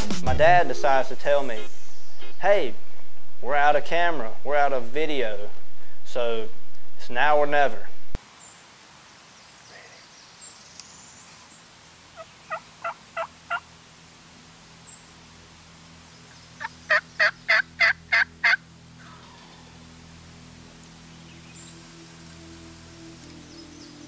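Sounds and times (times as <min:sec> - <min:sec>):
turkey yelps: 0:12.2 - 0:13.6, 0:16.6 - 0:19.6.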